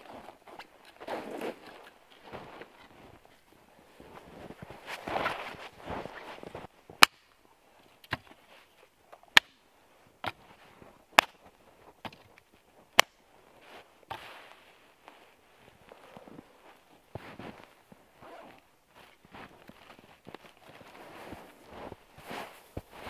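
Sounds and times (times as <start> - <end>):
rustling: 0.0 - 6.7, 13.4 - 23.0
wood chopping cracks: 7.0 - 7.4, 8.0 - 8.4, 9.2 - 9.6, 11.2 - 12.3, 13.0 - 13.2.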